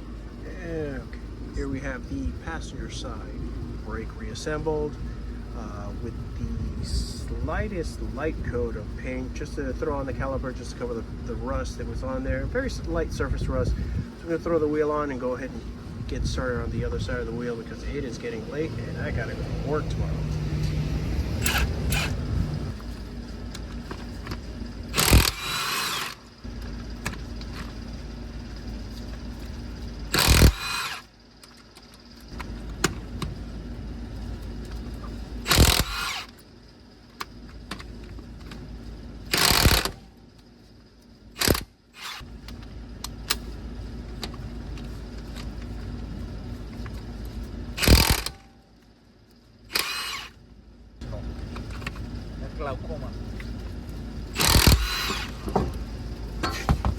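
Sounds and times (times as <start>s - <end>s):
low background hum: 0.0s - 56.9s
impact wrench bursts: 20.6s - 22.4s, 24.9s - 26.4s, 30.1s - 31.1s, 35.4s - 36.4s, 39.3s - 40.1s, 41.4s - 42.3s, 47.8s - 48.5s, 49.7s - 50.4s, 54.3s - 55.6s.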